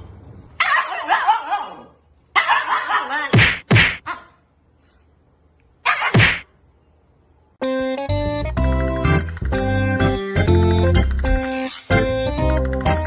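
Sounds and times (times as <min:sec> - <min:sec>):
dog barking: 0:00.6 - 0:03.4, 0:04.0 - 0:04.4, 0:05.8 - 0:06.4.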